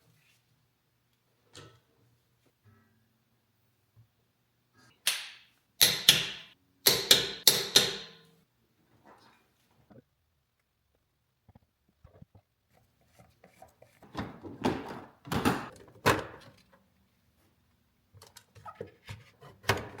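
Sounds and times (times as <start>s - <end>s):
hard objects knocking and clattering: 14.0s - 16.6s.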